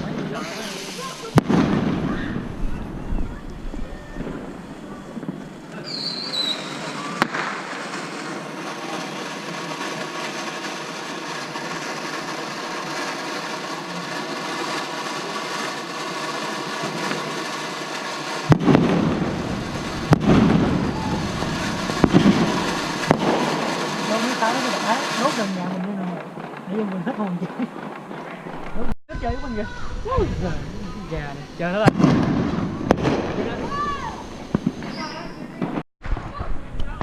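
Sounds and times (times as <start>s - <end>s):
firework steady hiss: 0.0s - 25.9s, 28.3s - 35.8s
firework bangs: 0.0s - 37.0s
firework falling whistle: 0.4s - 9.1s, 18.5s - 25.4s, 31.5s - 35.8s.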